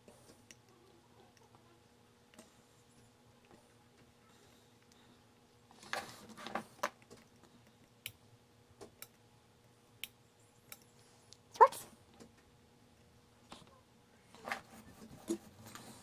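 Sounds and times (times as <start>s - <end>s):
faint steady hum: 0.0s - 16.0s.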